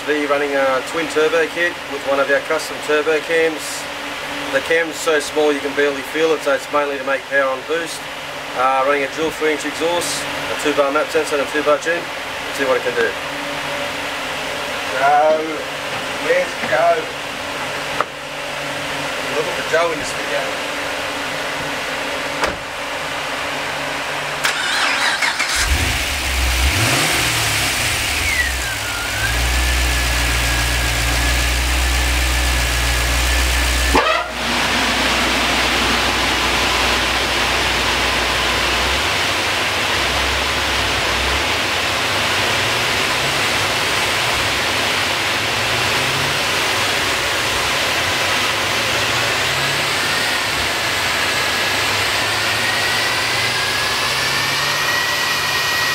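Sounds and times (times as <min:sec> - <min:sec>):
car engine at full throttle: 0:07.2 - 0:55.9
turbo whistle: 0:28.2 - 0:31.4, 0:33.9 - 0:34.5.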